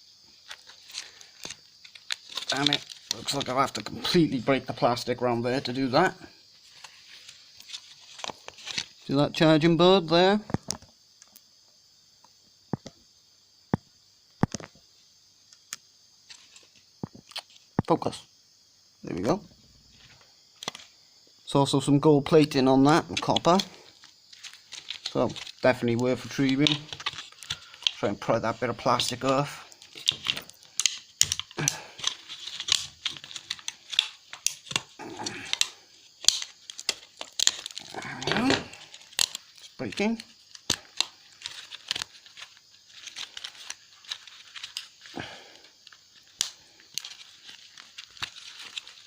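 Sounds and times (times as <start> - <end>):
plastic cracking: 0.4 - 3.9, 6.8 - 9.1, 14.4 - 14.8, 20.0 - 20.9, 22.3 - 49.0.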